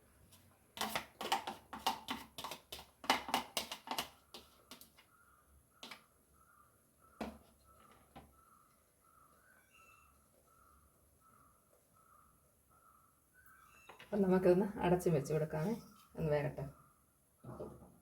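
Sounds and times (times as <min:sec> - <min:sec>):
utensil tapping and scraping a bowl: 0:00.8 - 0:05.0.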